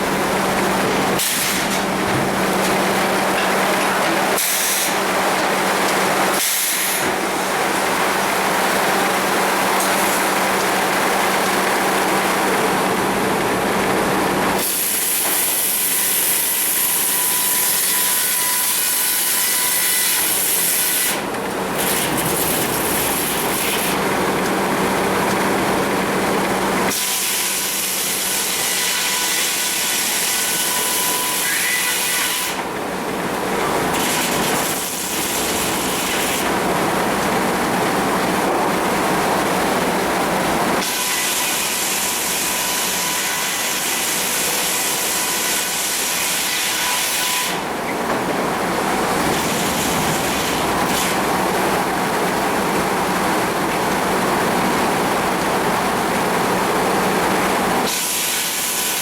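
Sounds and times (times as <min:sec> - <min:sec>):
sawmill running: 0:00.0 - 0:59.0
saw cutting through log: 0:01.2 - 0:02.0, 0:03.9 - 0:07.2, 0:14.6 - 0:24.0, 0:26.9 - 0:32.7, 0:40.8 - 0:47.7, 0:49.2 - 0:51.2, 0:57.8 - 0:59.0.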